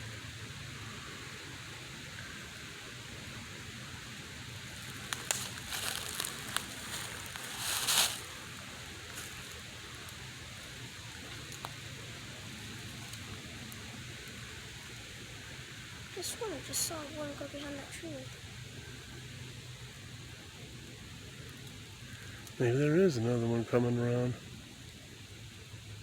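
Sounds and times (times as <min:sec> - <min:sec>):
outdoor background hiss: 0:00.0 - 0:26.0
rustling and crackling: 0:04.6 - 0:12.0.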